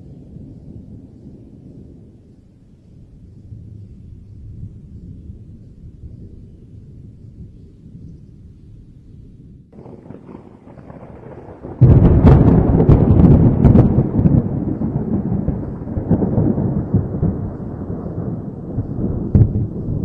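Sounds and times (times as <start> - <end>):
thunder rumbling: 0.0 - 20.0
thunder crack: 9.8 - 20.0.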